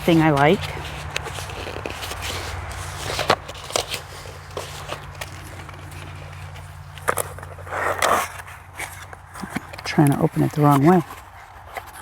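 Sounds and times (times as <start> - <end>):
package crinkling being opened: 0.0 - 9.9.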